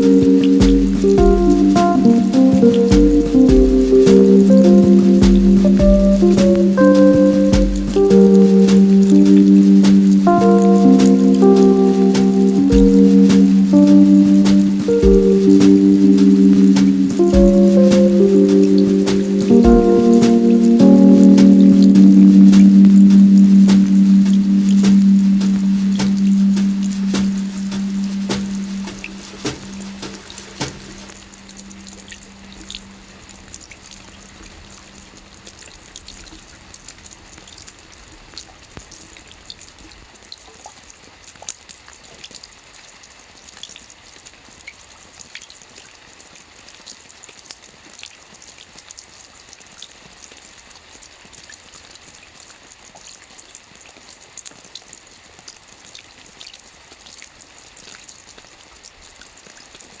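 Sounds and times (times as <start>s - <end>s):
raindrops tapping on surface: 0.0s - 31.2s
low musical tone: 0.0s - 35.0s
steady rain hiss: 0.0s - 55.9s.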